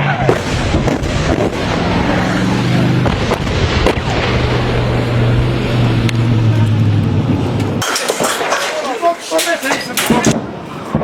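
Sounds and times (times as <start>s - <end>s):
low engine hum: 0.0s - 7.8s
dense noise: 0.0s - 11.0s
sharp bangs: 0.0s - 11.0s.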